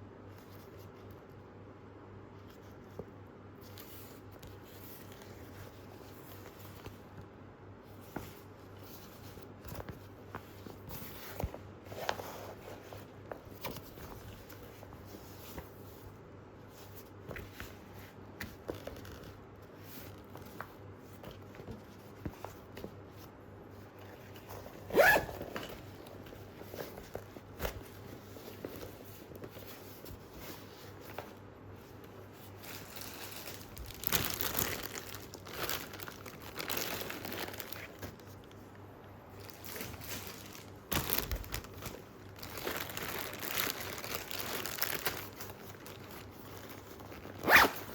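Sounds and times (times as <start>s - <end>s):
nylon bag rustling and crinkling: 24.2s - 31.4s, 32.2s - 38.7s, 39.3s - 47.9s.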